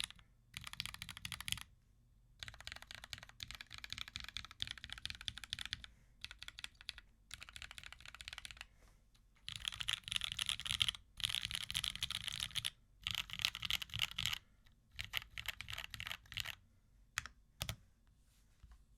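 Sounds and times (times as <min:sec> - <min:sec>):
mechanical keyboard typing: 0:00.0 - 0:01.7, 0:02.4 - 0:08.7, 0:09.4 - 0:16.6.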